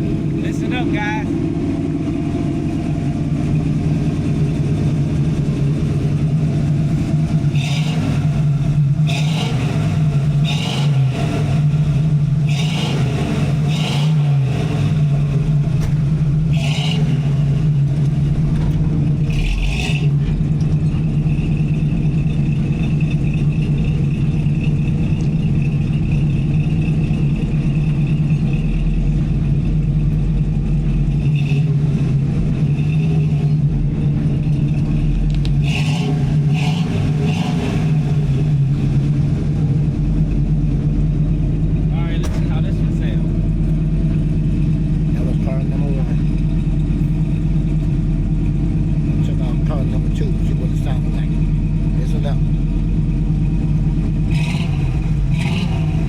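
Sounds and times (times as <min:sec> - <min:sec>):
car engine running: 0:00.0 - 0:56.0
short sharp engine bursts: 0:07.5 - 0:15.3, 0:54.2 - 0:56.0.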